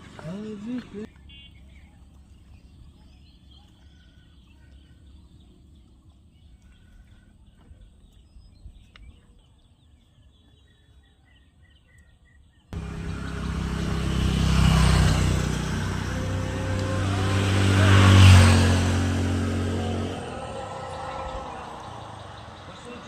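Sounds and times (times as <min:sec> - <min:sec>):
vehicle engine running: 0:12.8 - 0:23.0.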